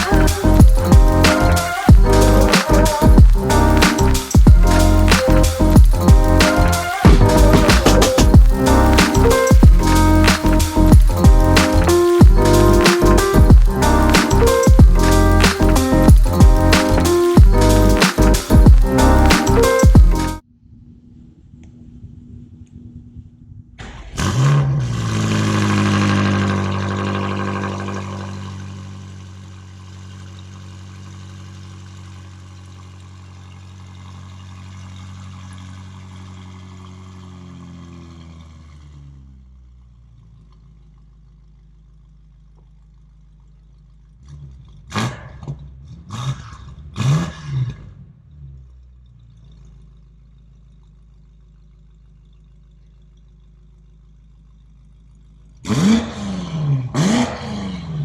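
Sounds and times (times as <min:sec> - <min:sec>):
engine revving: 0:00.0 - 0:20.4, 0:23.8 - 0:29.8, 0:44.2 - 0:48.7, 0:55.6 - 0:58.0
car engine starting and idling: 0:00.0 - 0:20.5, 0:23.8 - 0:58.0.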